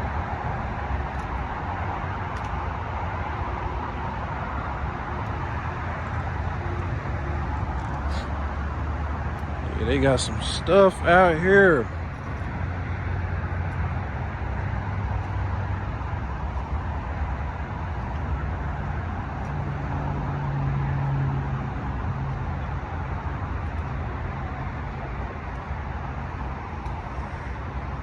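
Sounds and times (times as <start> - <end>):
vehicle engine rumbling: 0.9 - 16.8.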